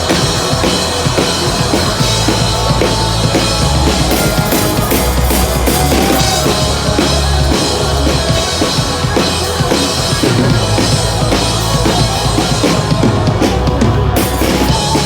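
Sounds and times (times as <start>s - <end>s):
bass guitar: 0.0s - 15.0s
drum kit beat: 0.0s - 15.0s
electric guitars: 0.0s - 15.0s.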